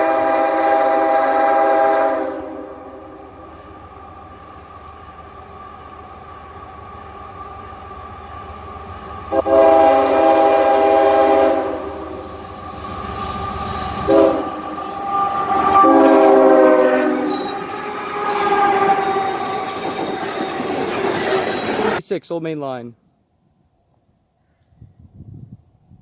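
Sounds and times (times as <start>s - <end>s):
locomotive air horn blasts: 0.0s - 3.3s, 9.3s - 12.3s, 14.0s - 19.4s
train rumble: 0.0s - 22.0s.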